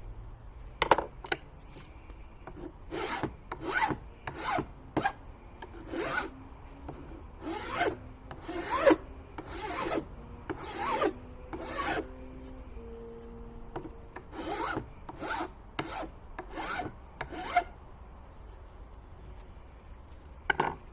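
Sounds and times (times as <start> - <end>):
rasp scraping across wood: 2.5 - 6.3, 6.9 - 12.1, 13.8 - 17.7.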